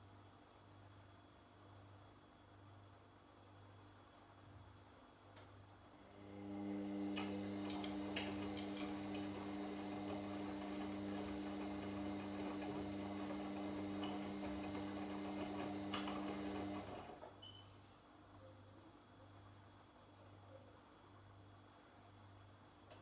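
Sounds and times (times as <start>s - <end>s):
washing machine drum humming: 6.2s - 17.2s.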